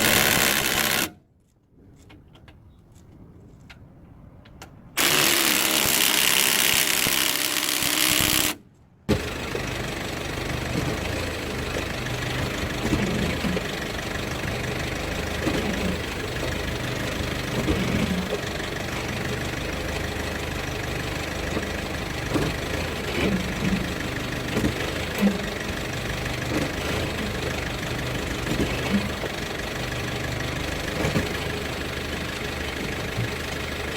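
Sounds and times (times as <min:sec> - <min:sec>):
pickup engine idling: 0:09.1 - 0:33.9.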